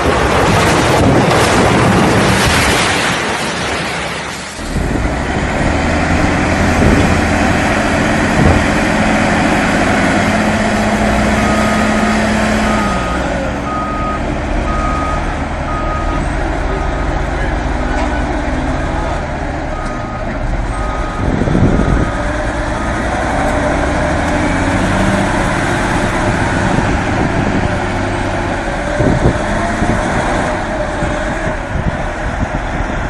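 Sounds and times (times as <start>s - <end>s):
loud rushing noise: 0.0s - 12.9s
heavy vehicle engine running: 4.5s - 33.0s.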